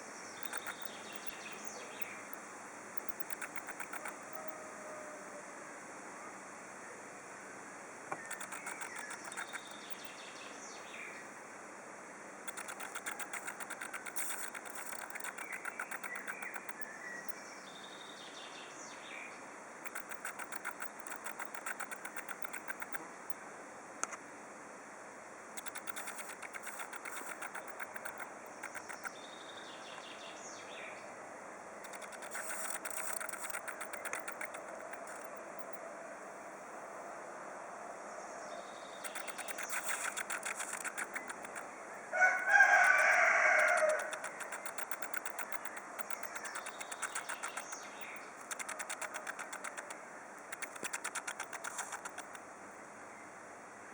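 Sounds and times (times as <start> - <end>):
faint bird chirps: 0.0 - 11.4, 12.4 - 23.5, 25.5 - 31.2, 31.8 - 36.0, 38.0 - 53.4
spider clicking rapidly: 0.4 - 4.6, 8.1 - 10.1, 12.4 - 16.9, 19.8 - 23.1, 25.6 - 29.2, 31.8 - 35.8, 39.0 - 52.5
drawn-out pitched call: 39.1 - 52.4.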